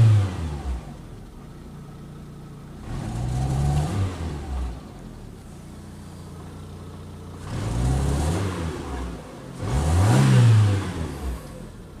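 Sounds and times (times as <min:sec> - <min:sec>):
engine revs blipped: 0:02.8 - 0:05.2, 0:07.4 - 0:12.0
car engine idling roughly: 0:04.8 - 0:07.8.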